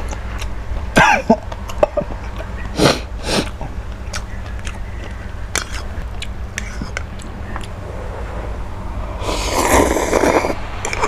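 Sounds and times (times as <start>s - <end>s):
steady low hum: 0.0s - 11.0s
man clearing throat: 0.9s - 2.0s
man coughing: 1.0s - 2.0s.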